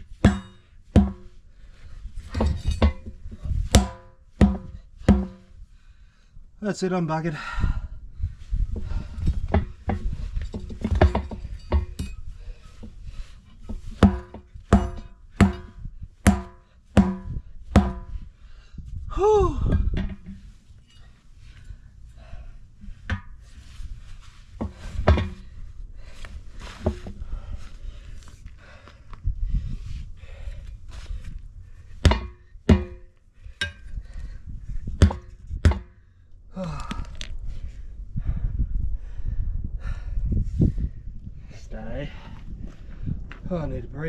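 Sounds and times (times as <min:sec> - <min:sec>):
rubber mallet striking tyre: 0:00.2 - 0:01.3, 0:03.7 - 0:05.5, 0:14.0 - 0:18.1, 0:32.0 - 0:33.1, 0:35.0 - 0:36.0.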